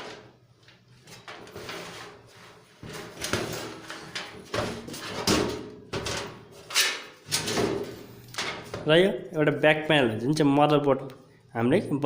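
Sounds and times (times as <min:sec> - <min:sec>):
sheet metal knocking and scraping: 0:02.8 - 0:06.4.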